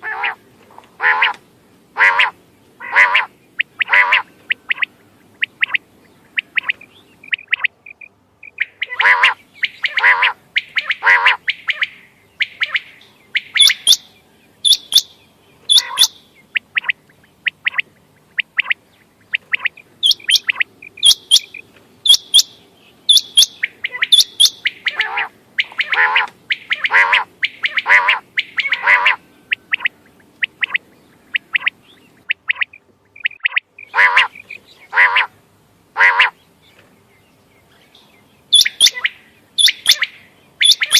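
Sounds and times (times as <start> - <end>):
quail nasal calls: 0.0 - 0.4, 1.0 - 1.4, 2.0 - 15.1, 15.7 - 35.4, 36.0 - 36.4, 38.5 - 40.9
quail sharp whistled notes: 38.6 - 40.9.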